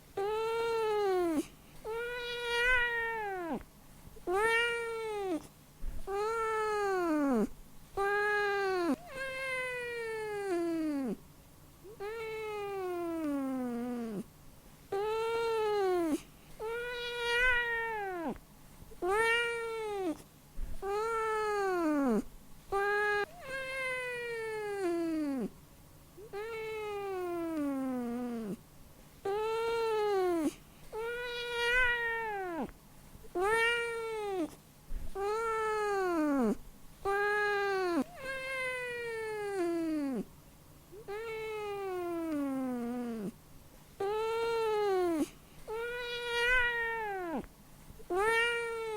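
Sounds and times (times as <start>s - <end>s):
cat meowing: 0.2s - 3.6s, 4.2s - 5.4s, 6.1s - 11.2s, 15.0s - 18.4s, 19.0s - 20.2s, 20.8s - 25.5s, 26.3s - 28.6s, 29.3s - 32.7s, 33.3s - 34.5s, 35.2s - 40.2s, 41.0s - 43.3s, 44.0s - 47.5s, 48.1s - 48.9s.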